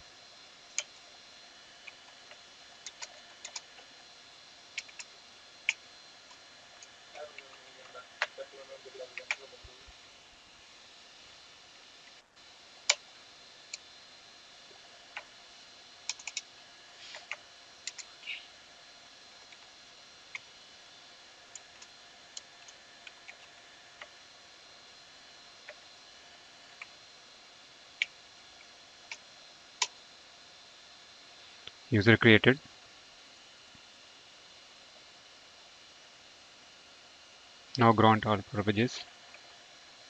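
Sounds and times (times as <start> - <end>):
computer keys clicking: 2.8 - 3.6, 16.1 - 16.5, 17.1 - 18.1.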